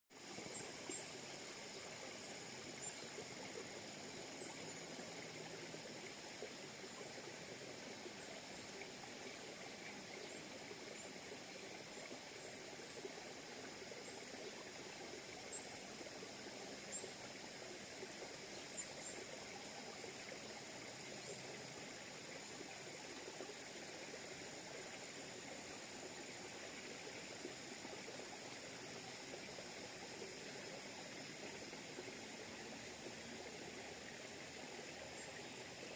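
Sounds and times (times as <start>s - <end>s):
water flowing: 0.1s - 35.9s.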